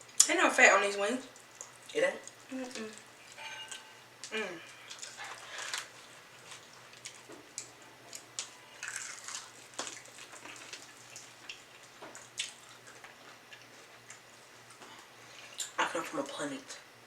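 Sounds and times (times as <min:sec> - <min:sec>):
chewing crunches: 0:04.8 - 0:14.9.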